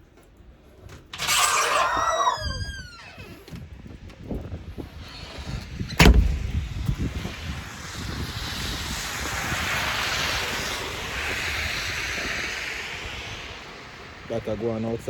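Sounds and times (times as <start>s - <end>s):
wind rushing: 5.8s - 14.2s
heavy thump: 6.0s - 7.3s.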